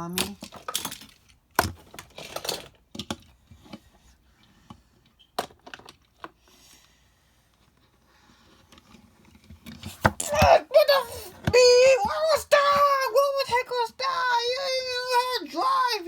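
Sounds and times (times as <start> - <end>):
toy cars clicking and knocking: 0.0 - 6.5.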